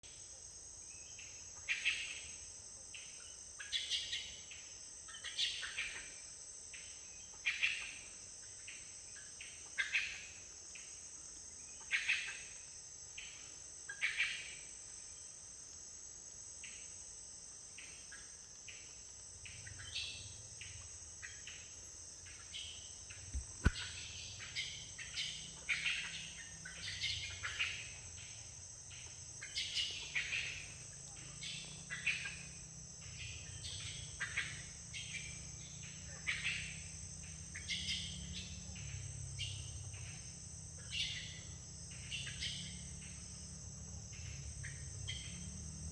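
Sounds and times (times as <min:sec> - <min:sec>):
insects droning: 0:00.0 - 0:45.9
sharp click: 0:23.3 - 0:23.9.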